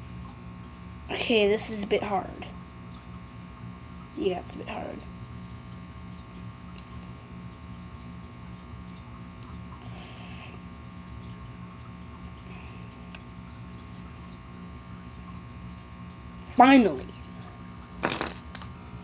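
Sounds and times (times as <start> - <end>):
background hum with faint pulsing: 0.0 - 19.0
plastic pieces clicking together: 18.0 - 18.6.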